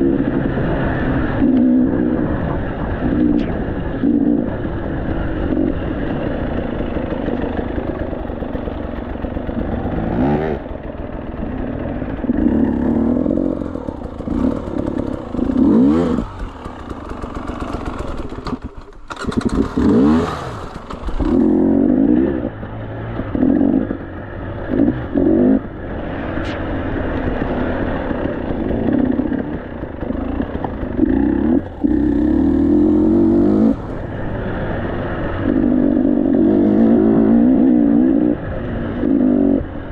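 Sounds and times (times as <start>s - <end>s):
motorbike engine revving: 0.0s - 39.9s
motorbike clatter: 5.5s - 37.0s.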